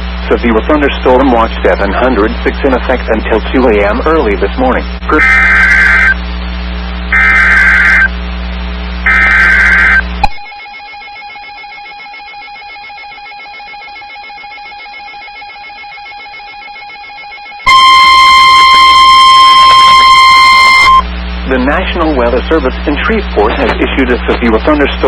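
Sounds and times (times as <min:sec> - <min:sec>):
low radio hum: 0:00.0 - 0:10.4, 0:17.7 - 0:25.0
buzzy data bursts: 0:00.2 - 0:10.2, 0:17.7 - 0:25.0
loud warning alarm tone: 0:05.1 - 0:06.2, 0:07.1 - 0:08.1, 0:09.0 - 0:23.7.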